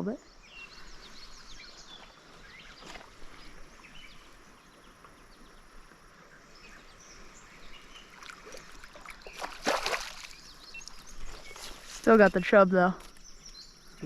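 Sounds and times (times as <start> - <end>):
low steady hiss: 0.1 - 8.2.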